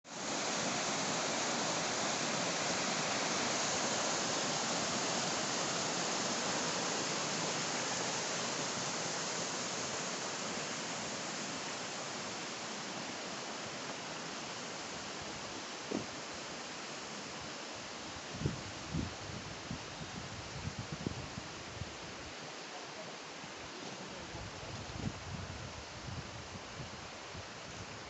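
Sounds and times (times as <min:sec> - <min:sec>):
waterfall rushing: 0:00.1 - 0:17.3.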